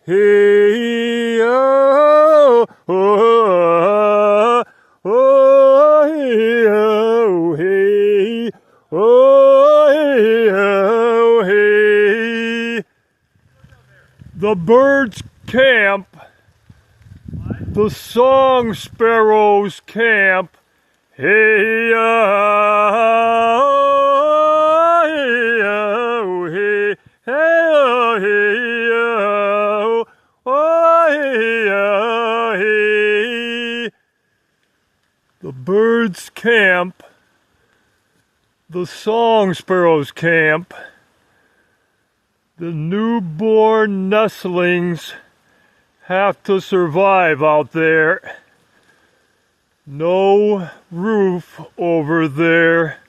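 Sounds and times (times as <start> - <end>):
man breathing: 4.7 - 5.0, 8.5 - 8.9, 40.7 - 42.2, 45.1 - 46.0, 48.2 - 49.6
man chanting wordlessly: 13.5 - 16.3, 17.4 - 20.5, 21.2 - 34.0, 35.4 - 37.0, 38.7 - 40.9, 42.6 - 45.3, 46.0 - 48.4, 49.8 - 53.0.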